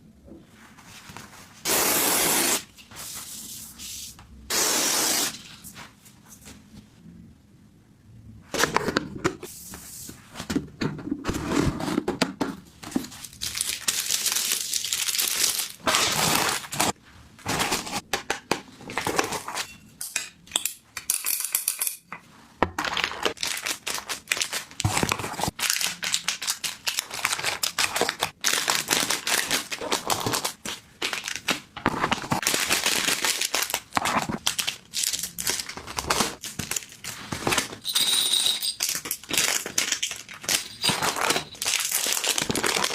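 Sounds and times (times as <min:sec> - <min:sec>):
wrapping crinkling and rustling: 0:12.8 - 0:18.0, 0:22.9 - 0:37.8, 0:38.8 - 0:42.9.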